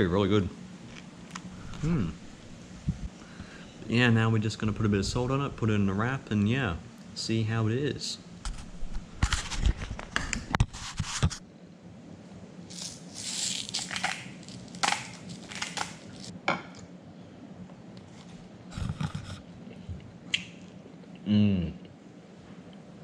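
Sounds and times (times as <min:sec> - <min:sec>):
food wrap crunching and crinkling: 0:12.7 - 0:16.3.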